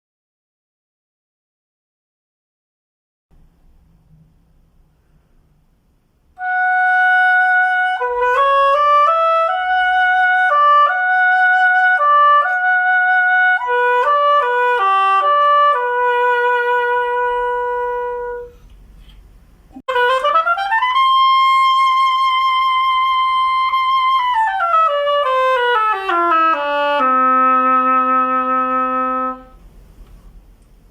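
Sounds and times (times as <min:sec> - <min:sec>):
solo oboe melody: 0:06.4 - 0:18.6, 0:19.8 - 0:29.6.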